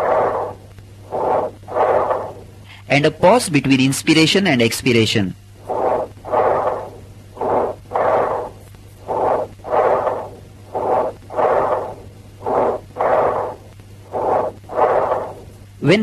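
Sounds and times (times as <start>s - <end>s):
bronchial breath sounds: 0.0s - 2.9s, 5.6s - 15.7s.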